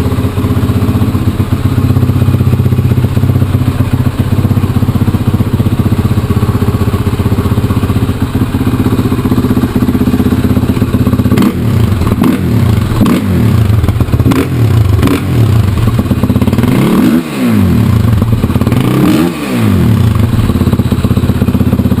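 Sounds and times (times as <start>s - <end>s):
quad engine revving: 0.0s - 1.3s, 10.3s - 22.0s.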